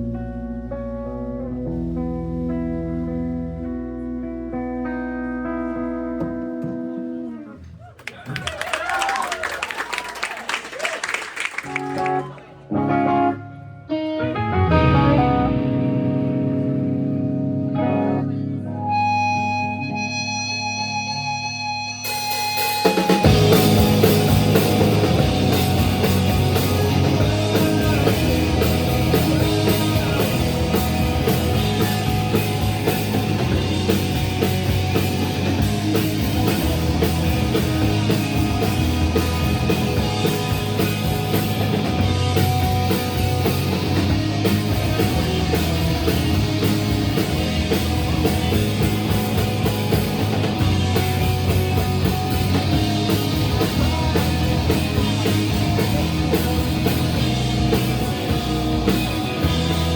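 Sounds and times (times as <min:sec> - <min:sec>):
electric guitar: 0:00.0 - 0:07.7, 0:11.5 - 0:59.9
rock band playing: 0:00.0 - 0:07.7, 0:08.4 - 0:59.9
drum kit: 0:22.1 - 0:59.9.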